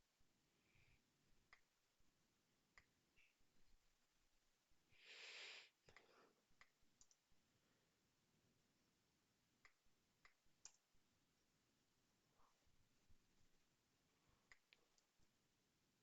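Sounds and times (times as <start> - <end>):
computer mouse clicks: 5.9 - 7.2, 9.6 - 10.8.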